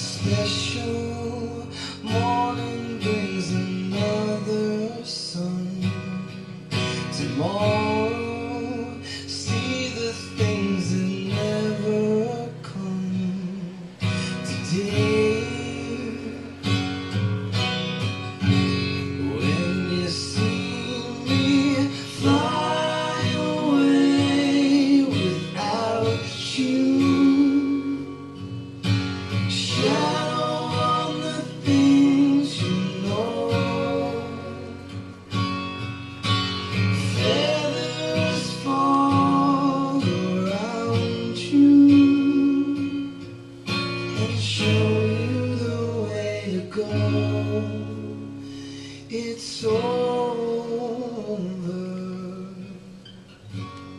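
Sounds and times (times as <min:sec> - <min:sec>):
acoustic guitar: 0:00.0 - 0:53.9
person singing: 0:19.2 - 0:28.3, 0:29.4 - 0:35.0, 0:36.9 - 0:43.4, 0:44.2 - 0:53.0.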